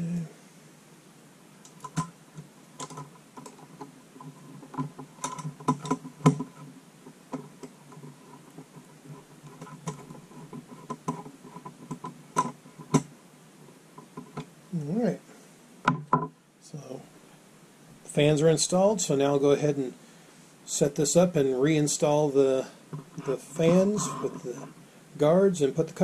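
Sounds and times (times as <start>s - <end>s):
hands clicking and knocking on computer parts: 1.6s - 6.7s, 7.3s - 13.1s.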